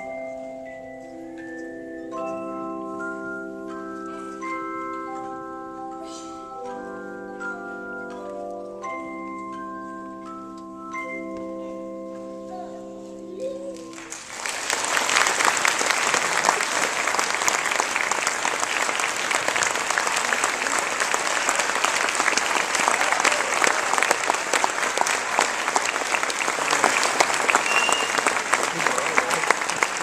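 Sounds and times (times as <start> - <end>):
handbell chord: 0.0 - 13.2
audience applause: 13.8 - 30.0.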